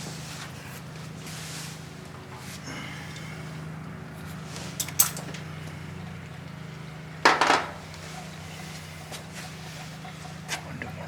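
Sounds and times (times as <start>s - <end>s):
steady low hum: 0.0s - 11.0s
metal hand tools clattering: 4.8s - 5.4s.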